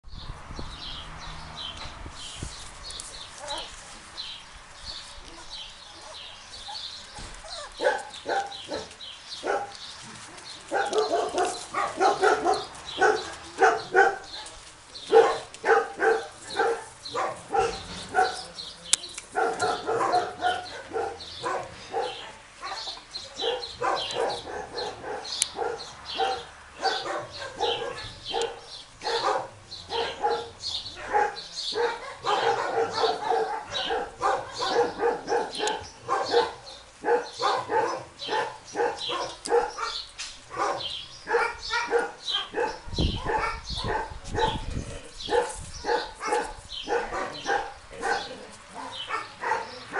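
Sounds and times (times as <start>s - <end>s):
small animals yipping and squealing: 5.4s - 9.0s.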